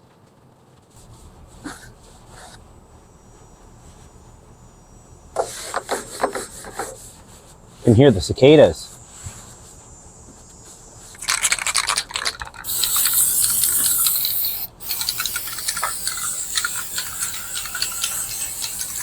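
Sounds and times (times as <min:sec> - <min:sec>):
cicadas droning: 0:01.0 - 0:19.0
aerosol can spraying: 0:11.1 - 0:19.0.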